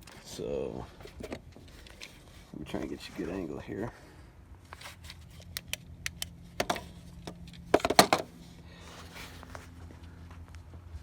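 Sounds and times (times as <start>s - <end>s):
handling clicks and knocks: 5.0s - 8.3s.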